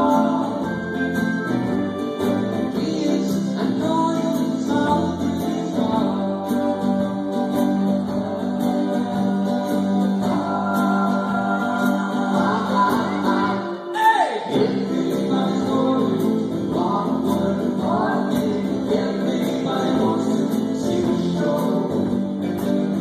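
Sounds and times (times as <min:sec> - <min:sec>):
strummed acoustic guitar: 0:00.0 - 0:13.9, 0:14.5 - 0:23.0
live band playing: 0:00.0 - 0:23.0
person singing: 0:00.0 - 0:23.0.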